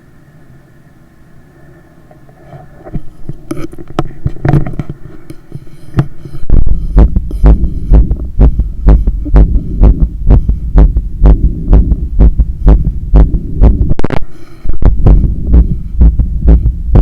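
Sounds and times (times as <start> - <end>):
fast heartbeat thumps: 6.5 - 17.0.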